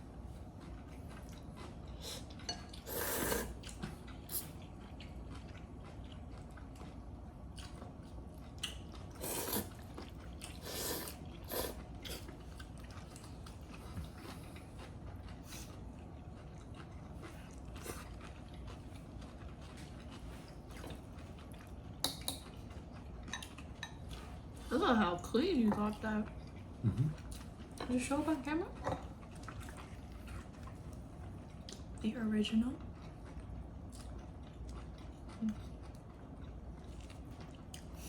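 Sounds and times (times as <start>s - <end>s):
person chewing: 0.5s - 24.4s, 33.0s - 38.0s
slurping: 2.7s - 4.6s, 9.2s - 9.8s.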